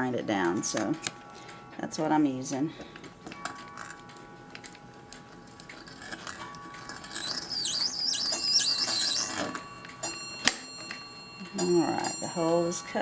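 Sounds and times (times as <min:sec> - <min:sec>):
reamer squealing in metal: 0:07.0 - 0:09.8.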